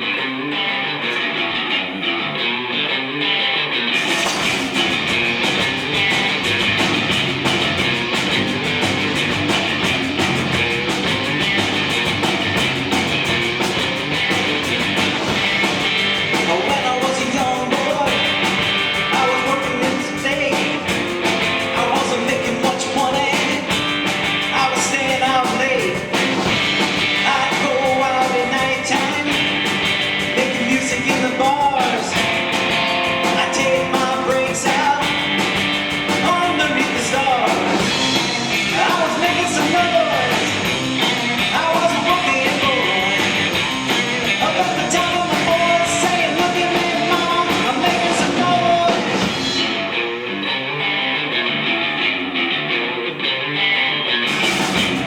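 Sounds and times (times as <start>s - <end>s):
live rock band playing: 0.0s - 55.0s
lead vocal singing: 16.3s - 23.8s, 24.4s - 35.4s, 36.2s - 49.8s.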